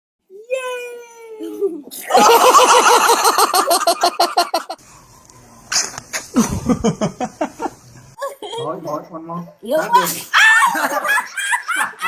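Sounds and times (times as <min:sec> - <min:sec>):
low laughter falling in pitch: 0:06.4 - 0:07.8.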